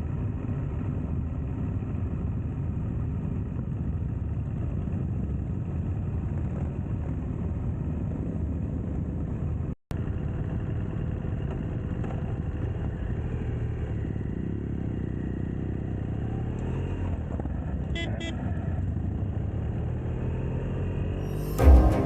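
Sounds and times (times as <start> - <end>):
motorcycle engine running: 0.1 - 16.1.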